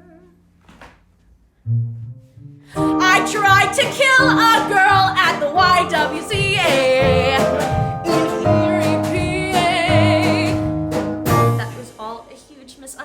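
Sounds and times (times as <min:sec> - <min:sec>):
person singing with vibrato: 0:02.8 - 0:12.1
sustained instrumental accompaniment: 0:02.8 - 0:12.1.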